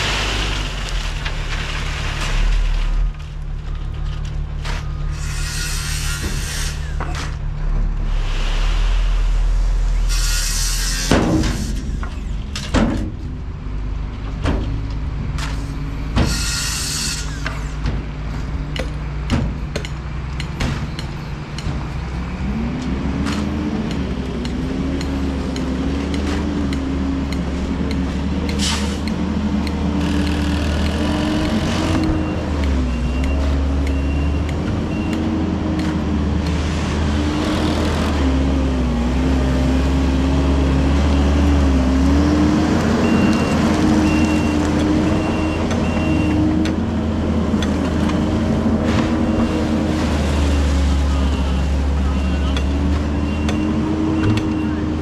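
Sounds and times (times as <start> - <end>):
heavy vehicle engine rumbling: 0.0 - 55.0
reverse warning beeper: 50.4 - 54.8.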